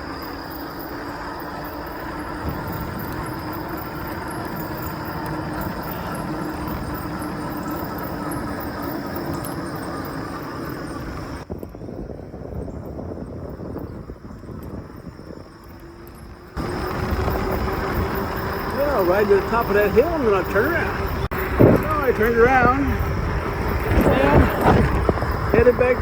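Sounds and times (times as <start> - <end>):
electric motor hum and whine: 0.0 - 26.0
tyre and wind noise: 0.0 - 26.0.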